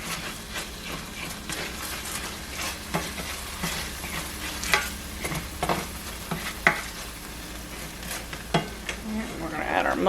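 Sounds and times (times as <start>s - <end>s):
utensil knocking and scraping pan: 0.0s - 7.0s
garlic sizzling in oil: 0.0s - 10.0s.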